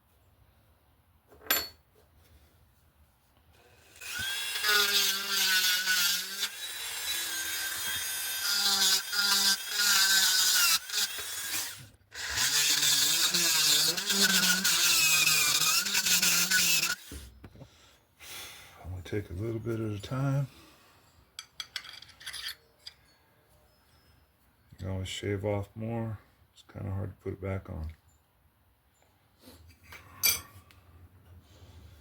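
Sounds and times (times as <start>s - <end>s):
electric grinder grinding metal: 3.7s - 17.2s.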